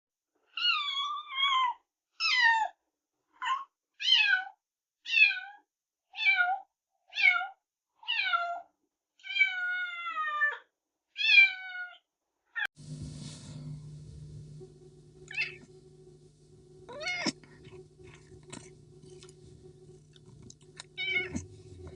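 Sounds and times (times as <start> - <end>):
kitten mewing: 16.9 - 19.2, 20.2 - 21.5.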